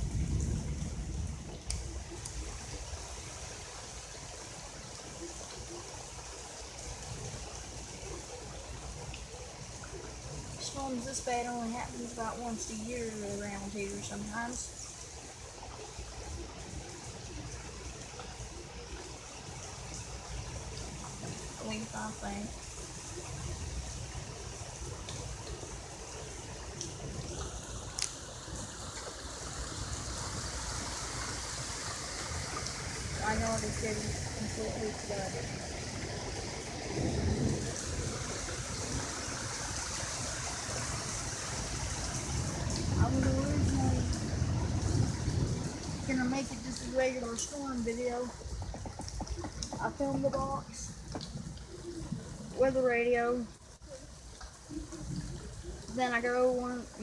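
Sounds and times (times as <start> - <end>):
heavy rain pouring: 0.0 - 57.0
running water: 0.0 - 57.0.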